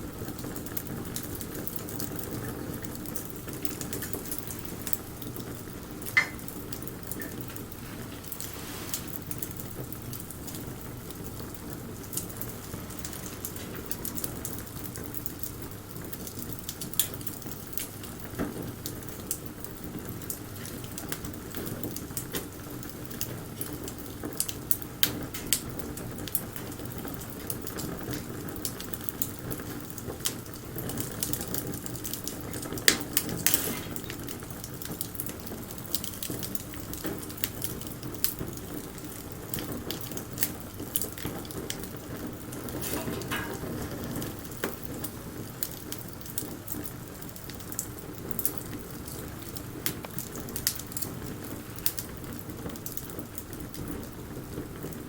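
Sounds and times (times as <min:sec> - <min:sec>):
bonfire crackling and popping: 0:00.0 - 0:55.0
fire hissing: 0:00.2 - 0:15.5, 0:30.8 - 0:53.6.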